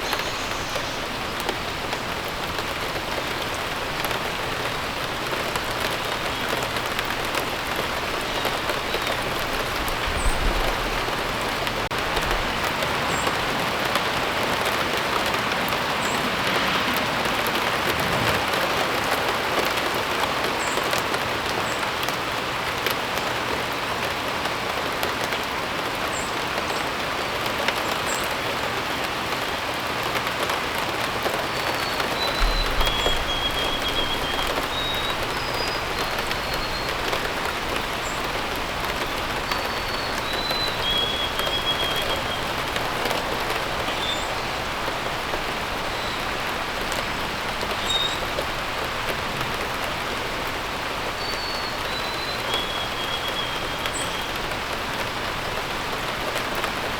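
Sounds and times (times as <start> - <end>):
bird chirping: 0.0 - 1.5, 31.7 - 43.0
steady rain falling: 0.0 - 56.9.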